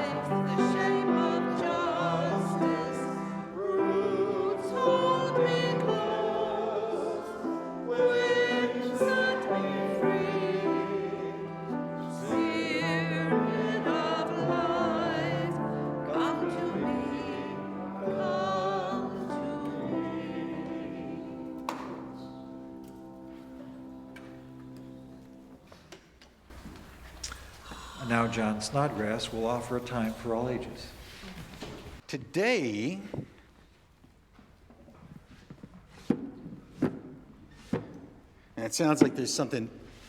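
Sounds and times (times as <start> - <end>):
classical solo voice singing: 0.0 - 22.1.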